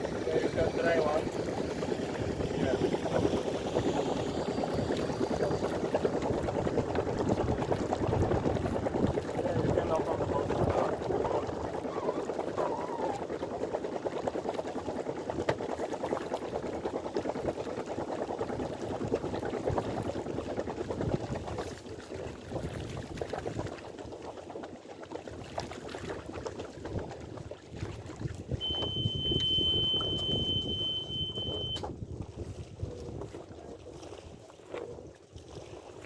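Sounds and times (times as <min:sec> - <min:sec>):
water splashing against hull: 0:00.0 - 0:36.0
steady high-pitched tone: 0:28.6 - 0:31.8.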